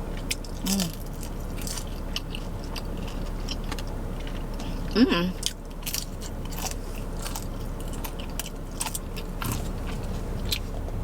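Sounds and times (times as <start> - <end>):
chewing and mouth smacks: 0.2 - 11.0.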